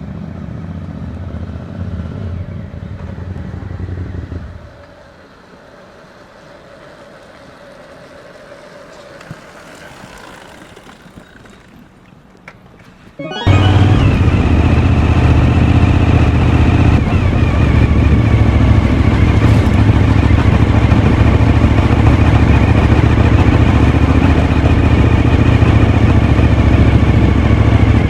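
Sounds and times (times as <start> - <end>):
motorcycle engine revving: 9.0 - 12.0, 13.3 - 28.0.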